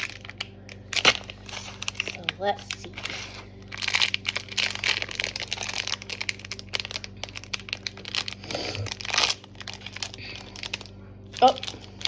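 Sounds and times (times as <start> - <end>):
plastic wrapper crackling: 0.0 - 12.0.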